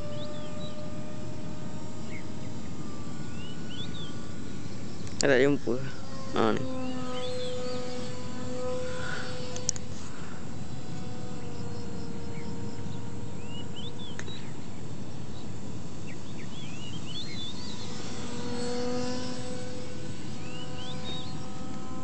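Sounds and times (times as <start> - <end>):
constant rushing noise: 0.0 - 22.0
electric motor whining: 0.0 - 22.0.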